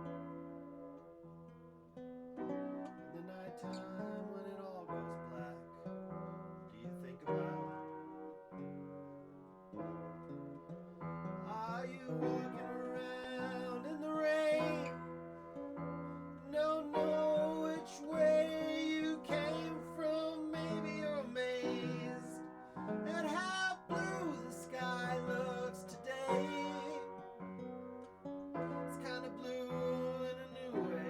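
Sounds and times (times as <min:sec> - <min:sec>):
person singing: 0:12.2 - 0:15.0, 0:16.5 - 0:22.5, 0:23.1 - 0:27.1.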